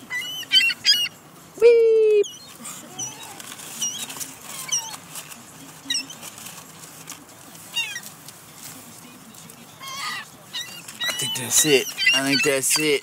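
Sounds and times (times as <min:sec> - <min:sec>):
seagulls mewing: 0:00.0 - 0:05.1, 0:09.7 - 0:13.0.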